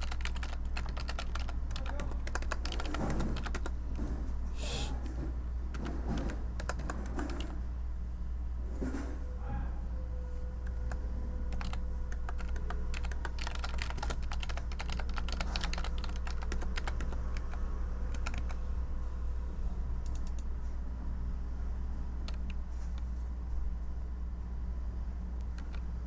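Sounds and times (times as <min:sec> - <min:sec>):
computer keyboard typing: 0:00.0 - 0:04.0, 0:05.7 - 0:07.6, 0:10.7 - 0:18.6, 0:20.0 - 0:20.5, 0:22.2 - 0:22.6, 0:25.4 - 0:25.8.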